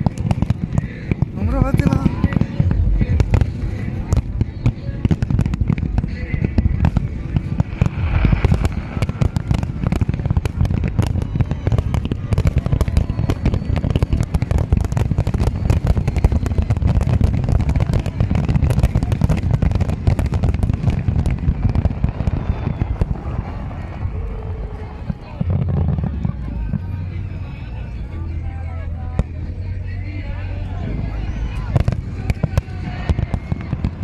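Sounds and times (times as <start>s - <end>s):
fireworks booming and cracking: 0.0s - 27.3s, 30.7s - 34.0s.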